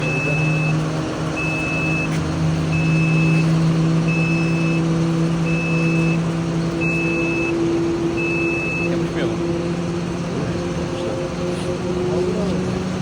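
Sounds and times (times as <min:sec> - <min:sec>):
vehicle reversing alarm beeping: 0:00.0 - 0:09.6
engine humming: 0:00.0 - 0:13.0.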